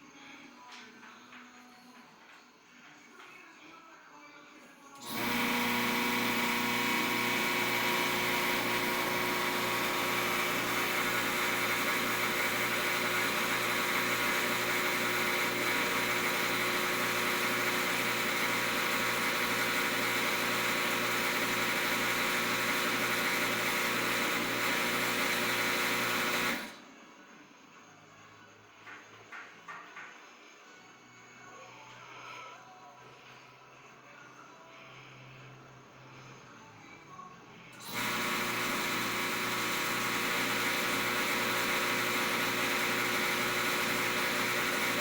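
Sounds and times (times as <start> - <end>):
electric suction pump motor running: 5.0 - 26.9, 37.8 - 45.0.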